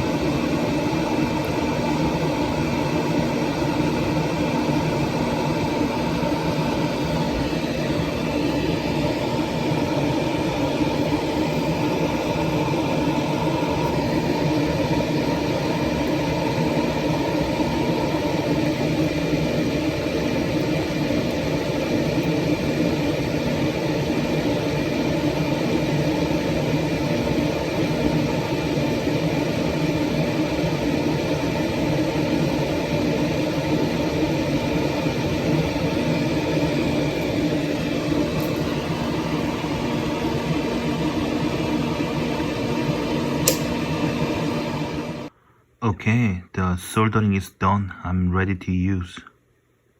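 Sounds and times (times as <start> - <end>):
steady machine hum: 0.0 - 49.1.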